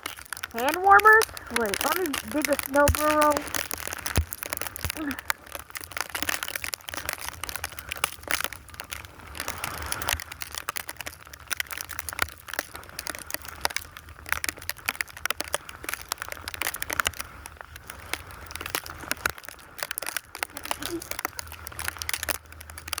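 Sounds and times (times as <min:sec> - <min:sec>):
snow crunching and scraping: 0:00.1 - 0:05.3, 0:09.0 - 0:10.2.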